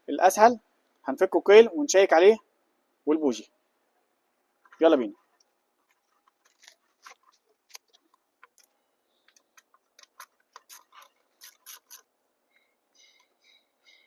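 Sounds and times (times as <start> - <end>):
short squeaks: 10.1 - 12.1.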